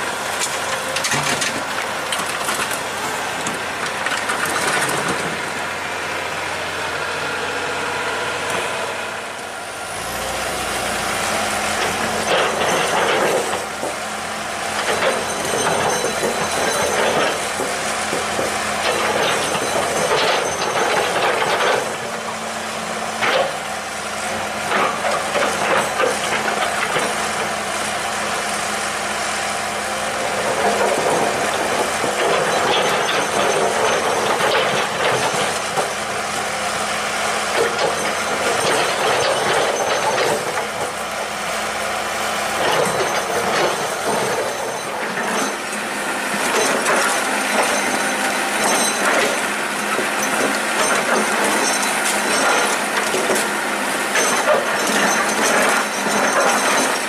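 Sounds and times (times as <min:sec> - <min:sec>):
excavator diesel engine running: 0:00.0 - 0:57.0
metallic clanks and rattles: 0:00.4 - 0:02.8, 0:11.8 - 0:14.0, 0:14.8 - 0:22.0, 0:30.4 - 0:36.0, 0:37.5 - 0:41.0, 0:46.4 - 0:53.5, 0:54.1 - 0:57.0.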